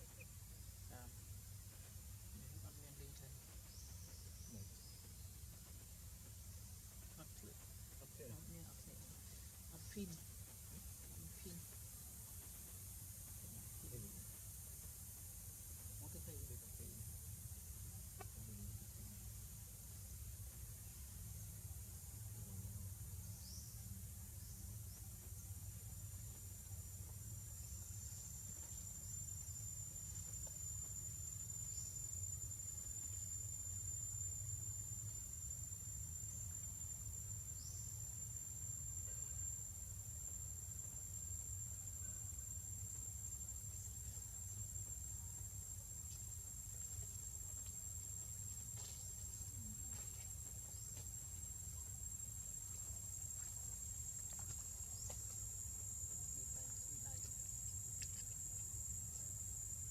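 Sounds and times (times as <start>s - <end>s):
insects droning: 0.0s - 59.9s.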